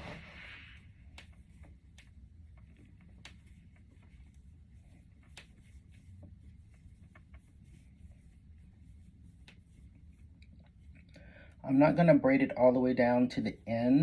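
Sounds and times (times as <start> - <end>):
wig hair rustling being plaited: 0.0 - 11.6
low room hum: 0.0 - 14.0.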